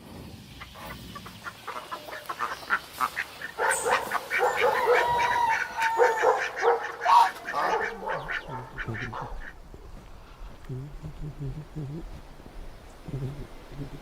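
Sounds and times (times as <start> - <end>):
honk-like calls: 0.6 - 9.6
fowl short calls: 0.7 - 9.6, 10.8 - 14.0.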